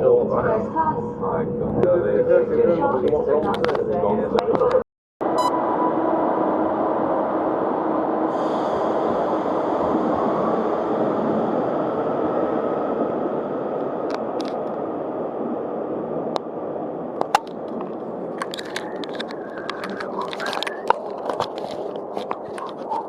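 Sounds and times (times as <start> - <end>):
passenger train rumbling: 5.5 - 23.0
sharp clicks and scrapes: 17.2 - 23.0.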